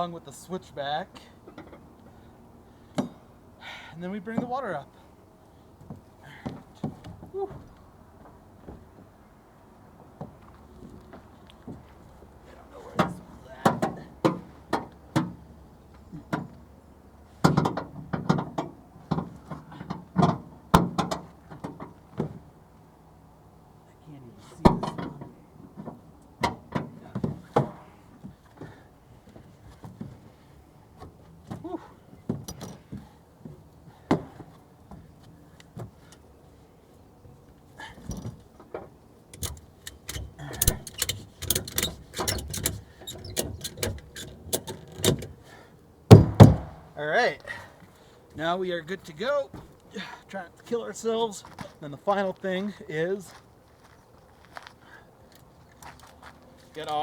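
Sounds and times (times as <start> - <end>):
ratchet strap metal clicks: 39.3 - 45.3.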